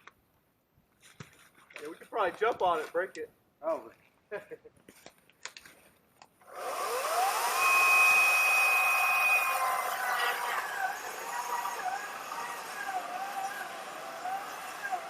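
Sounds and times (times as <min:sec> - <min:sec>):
electric chainsaw motor whining: 0:06.5 - 0:15.0.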